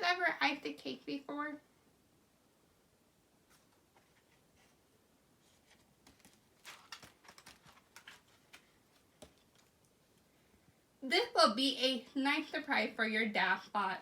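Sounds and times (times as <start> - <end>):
book pages rustling and turning: 3.4 - 4.8, 5.4 - 10.0.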